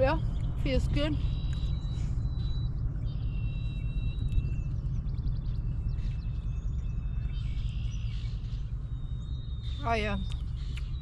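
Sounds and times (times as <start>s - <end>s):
birds whistling and chirping: 0.0s - 11.0s
wind rumble on microphone: 0.0s - 11.0s.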